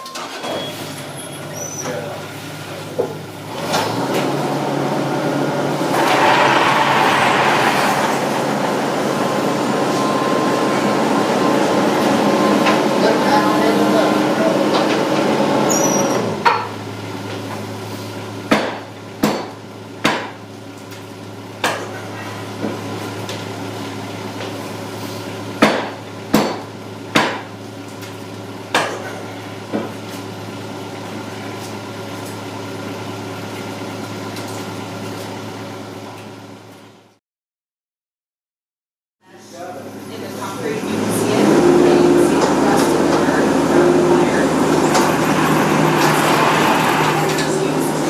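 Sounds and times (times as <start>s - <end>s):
engine humming: 0.2s - 16.4s, 39.9s - 48.0s.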